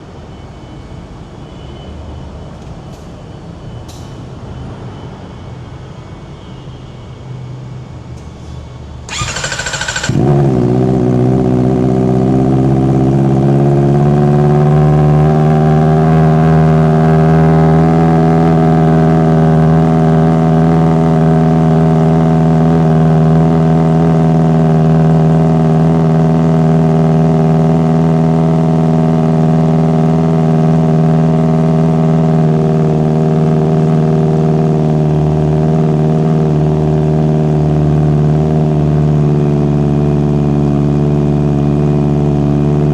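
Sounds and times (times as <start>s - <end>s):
starter motor cranking: 9.1s - 10.8s
motorcycle engine idling: 9.1s - 11.8s.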